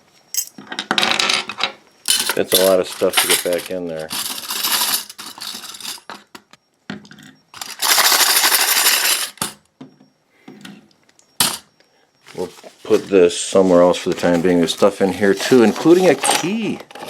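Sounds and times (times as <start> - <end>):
small metal parts clinking: 0.3 - 6.4, 7.6 - 9.6, 15.4 - 17.0.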